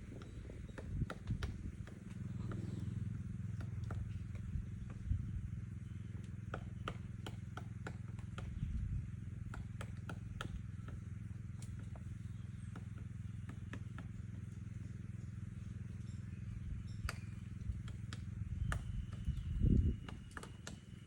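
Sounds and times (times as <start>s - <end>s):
woodpecker pecking at wood: 0.0s - 21.0s.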